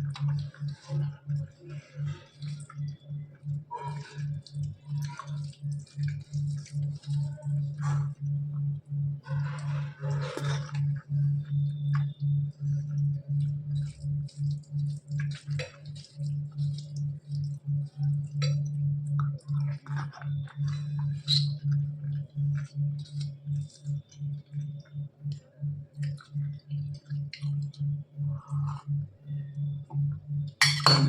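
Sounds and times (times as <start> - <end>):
pulsing low hum: 0.0 - 31.0
dishes clinking: 30.6 - 31.0.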